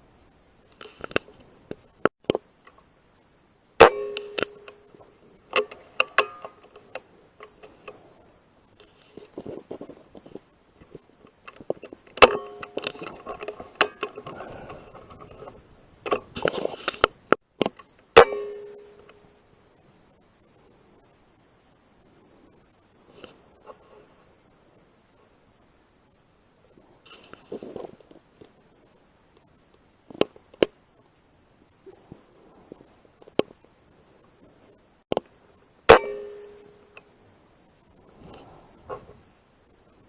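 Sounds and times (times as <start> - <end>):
clicks and rustling: 0.7 - 2.8, 8.8 - 17.9.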